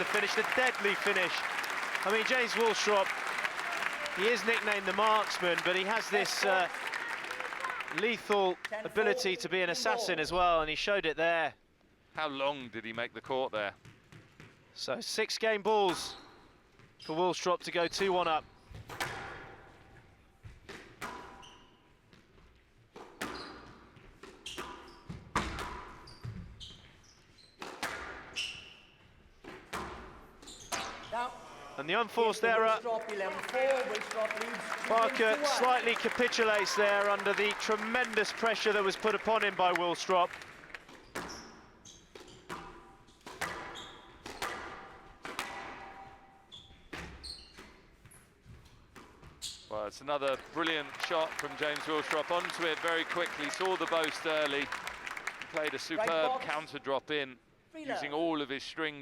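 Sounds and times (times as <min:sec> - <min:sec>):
shoes squeaking on court: 0:20.4 - 0:27.7, 0:30.4 - 0:31.2, 0:41.1 - 0:44.6, 0:45.9 - 0:49.7
squash ball smacks with echo: 0:27.6 - 0:28.3, 0:42.2 - 0:46.1.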